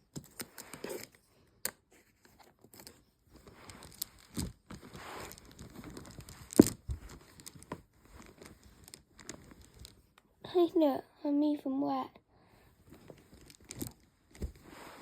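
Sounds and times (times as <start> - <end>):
plastic toys rustling and crinkling: 0.0 - 1.3, 1.9 - 10.2, 12.7 - 15.0.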